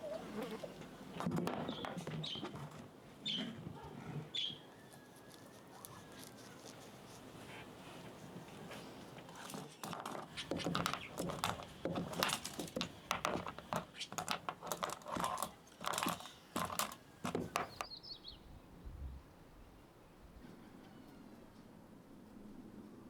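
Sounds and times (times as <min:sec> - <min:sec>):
dry corn husks rustling: 0:04.7 - 0:17.8.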